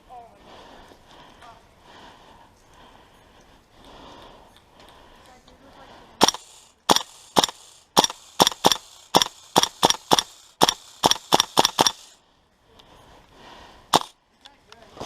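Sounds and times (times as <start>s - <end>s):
airsoft gun shots: 6.2s - 12.2s, 13.9s - 14.2s.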